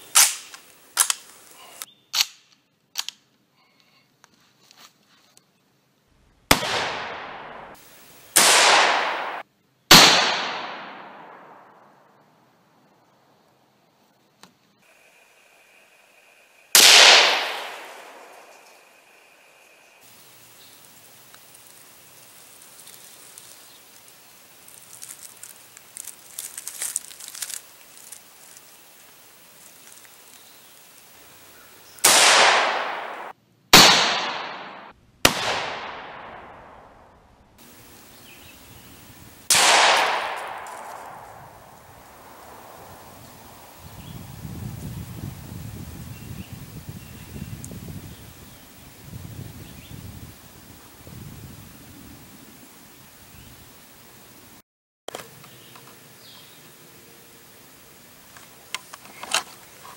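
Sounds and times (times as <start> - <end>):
rifle shots with echo: 6.5 - 7.8, 8.4 - 11.7, 16.8 - 18.5, 32.0 - 36.9, 39.5 - 41.3.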